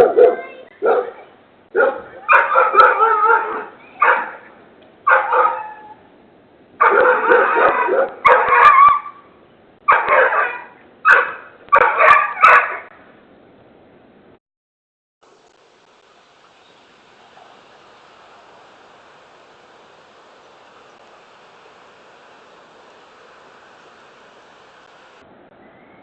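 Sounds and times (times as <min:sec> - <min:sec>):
dogs barking: 0:00.0 - 0:04.5, 0:05.1 - 0:06.0, 0:06.8 - 0:09.2, 0:09.9 - 0:12.9.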